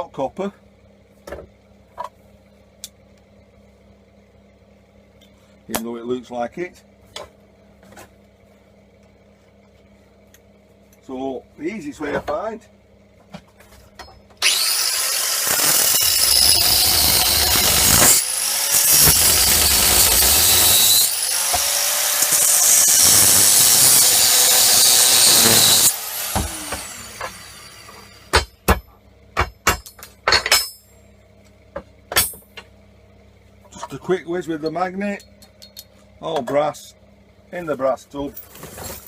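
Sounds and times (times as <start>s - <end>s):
power tool whining on metal: 14.4s - 28.5s
metallic clinks and knocks: 34.7s - 36.0s.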